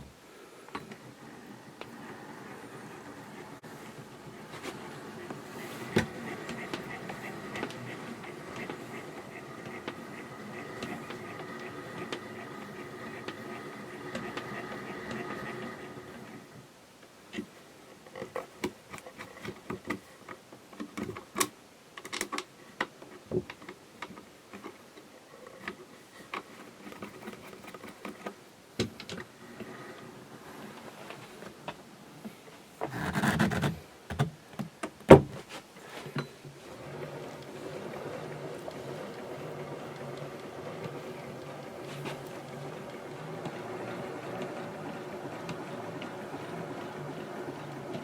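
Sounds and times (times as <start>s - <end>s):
rustling: 1.8s - 16.4s.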